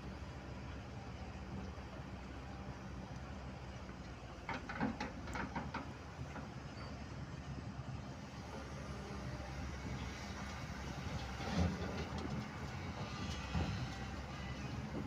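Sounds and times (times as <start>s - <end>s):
excavator diesel engine running: 0.0s - 15.0s
metallic clanks and knocks: 4.5s - 6.5s.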